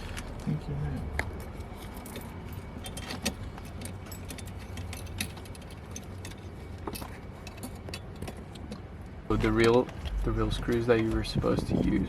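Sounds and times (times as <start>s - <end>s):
low hum: 1.3s - 11.9s
metallic clicks and rattles: 1.8s - 10.9s.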